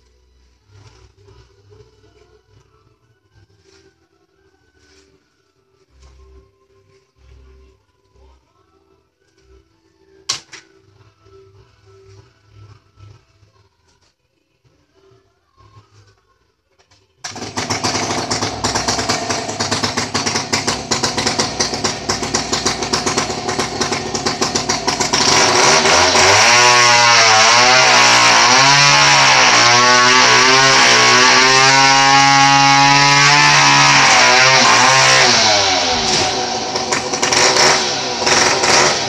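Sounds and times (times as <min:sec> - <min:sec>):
chainsaw engine: 0:17.2 - 0:39.0.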